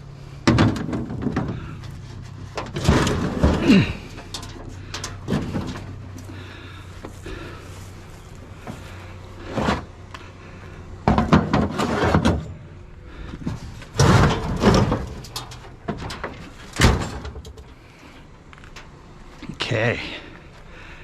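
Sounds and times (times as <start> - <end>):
scrap scraping and knocking: 0.5 - 6.0, 8.6 - 10.0, 11.1 - 12.6, 13.4 - 17.1.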